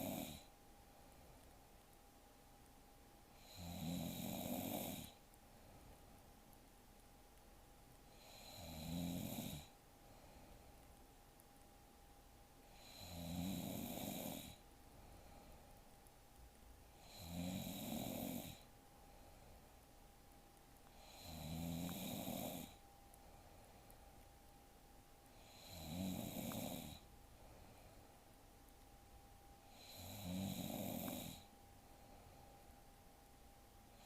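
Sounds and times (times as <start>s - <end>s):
woman snoring: 0.0s - 0.5s, 3.4s - 5.2s, 8.1s - 9.8s, 12.7s - 14.6s, 17.0s - 18.7s, 20.9s - 22.8s, 25.3s - 27.1s, 29.7s - 31.5s.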